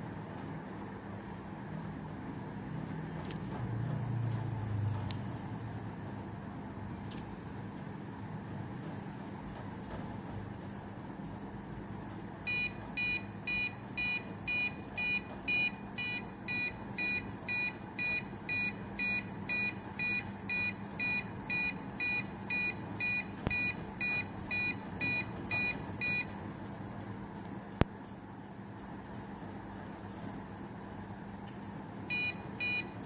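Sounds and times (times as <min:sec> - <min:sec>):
high-pitched alarm beeps: 0:12.5 - 0:26.4, 0:32.1 - 0:33.0.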